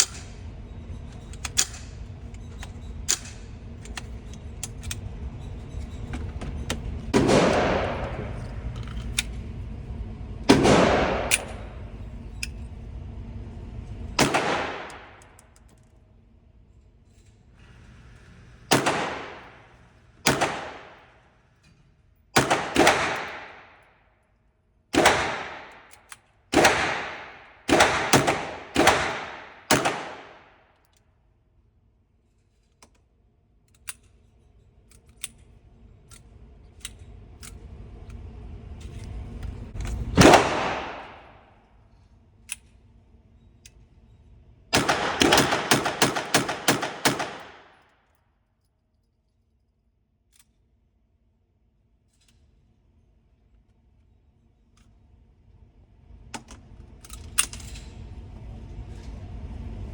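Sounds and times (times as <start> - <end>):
gunshots: 7.1 - 8.4, 10.5 - 11.7, 14.2 - 15.2, 18.7 - 19.6, 20.2 - 21.0, 22.4 - 23.8, 25.0 - 25.8, 26.6 - 30.5, 40.1 - 41.4, 44.8 - 47.8.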